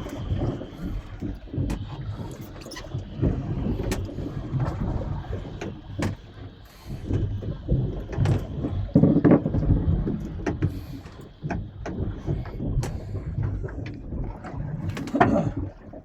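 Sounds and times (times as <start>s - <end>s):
boat engine rumble: 0.0s - 16.0s.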